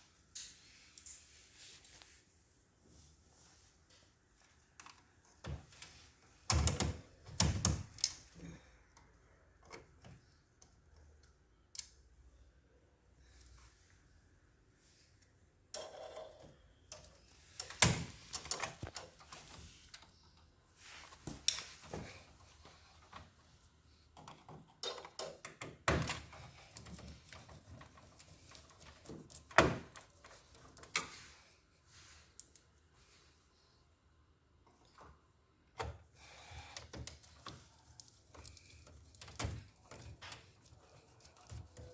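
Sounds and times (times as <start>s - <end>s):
hand tools and parts clicking: 36.4s - 41.9s.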